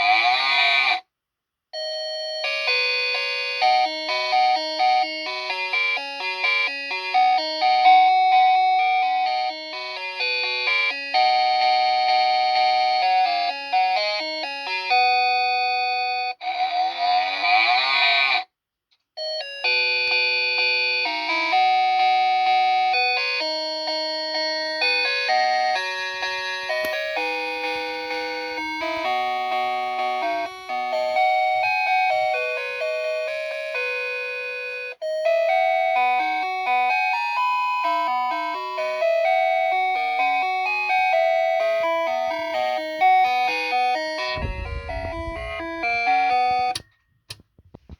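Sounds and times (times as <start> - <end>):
chiming electronic melody: 21.9 - 46.9.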